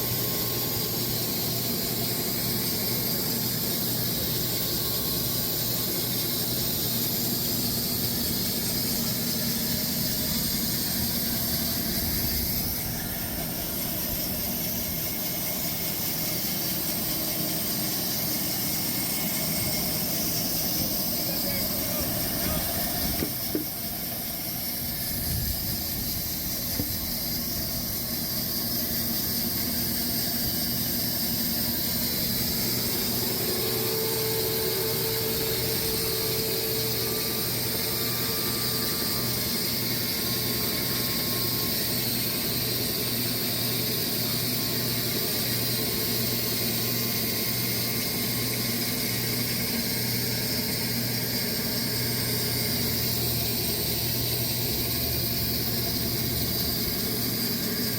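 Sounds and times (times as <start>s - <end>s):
sawmill engine hum: 0.0s - 57.9s
saw blade cutting log: 1.0s - 44.6s.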